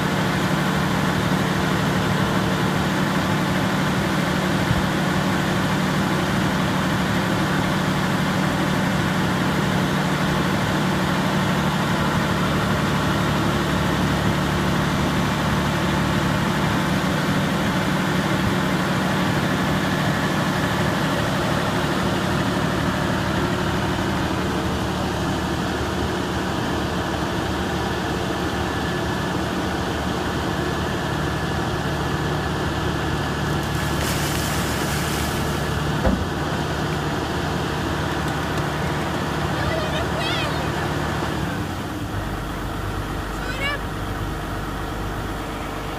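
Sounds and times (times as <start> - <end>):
excavator diesel engine running: 0.0 - 45.9
short hiss: 33.7 - 35.7.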